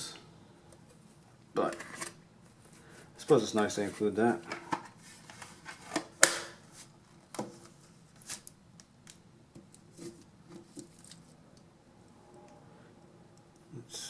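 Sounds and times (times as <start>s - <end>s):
small parts and packaging handled: 3.8s - 11.4s.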